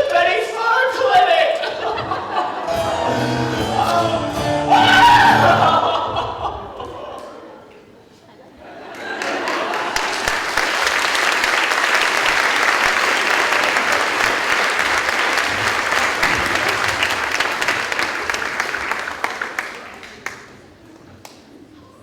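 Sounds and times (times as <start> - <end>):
audience applauding: 9.0 - 20.6.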